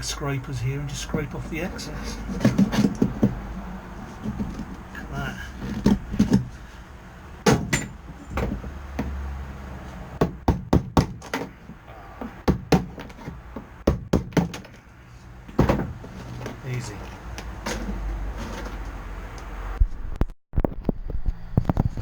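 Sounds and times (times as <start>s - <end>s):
hammer on chisel knocks: 10.2s - 11.5s.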